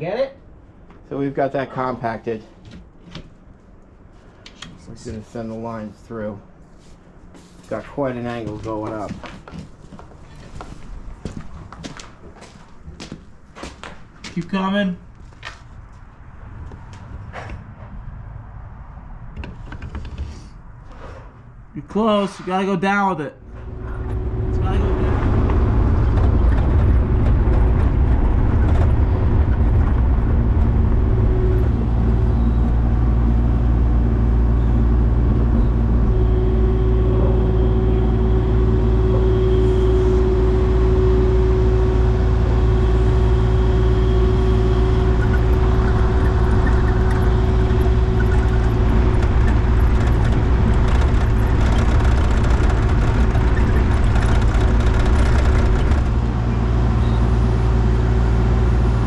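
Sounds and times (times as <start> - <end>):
excavator diesel engine running: 23.4 - 59.0
steady whine: 23.4 - 59.0.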